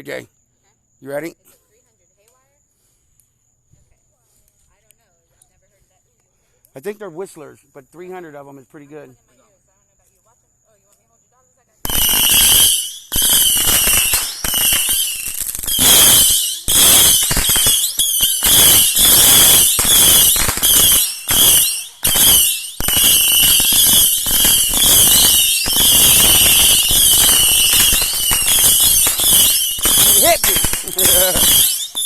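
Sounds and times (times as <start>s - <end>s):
shrill firework whistles: 11.8s - 32.0s
firework cracks: 11.9s - 32.0s.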